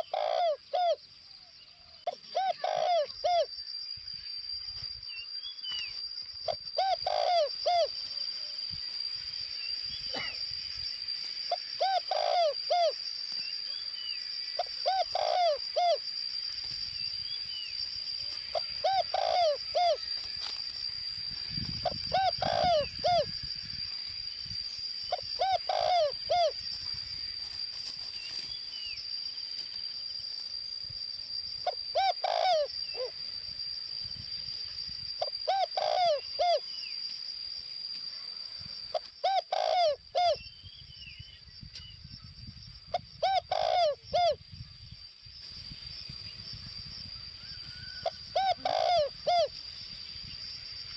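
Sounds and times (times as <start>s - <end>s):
dove cooing: 0.0s - 1.0s, 2.0s - 3.5s, 6.5s - 7.9s, 11.5s - 13.0s, 14.6s - 16.0s, 18.5s - 20.1s, 21.8s - 23.4s, 25.1s - 26.6s, 31.6s - 33.1s, 35.2s - 36.6s, 38.9s - 40.4s, 43.2s - 44.4s, 48.1s - 49.5s
faint bird chirps: 0.0s - 37.3s, 37.9s - 50.9s
steady high-pitched whine: 0.0s - 50.9s.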